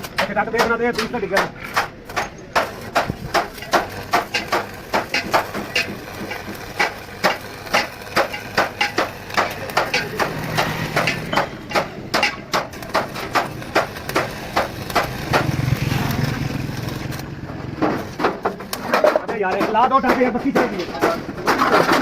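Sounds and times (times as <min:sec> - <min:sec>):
hammer striking metal: 0:00.0 - 0:15.6.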